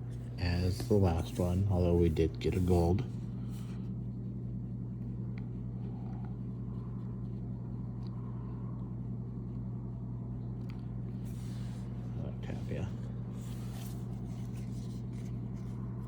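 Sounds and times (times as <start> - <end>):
low mechanical hum: 0.0 - 16.0
cards rustling: 12.6 - 16.0.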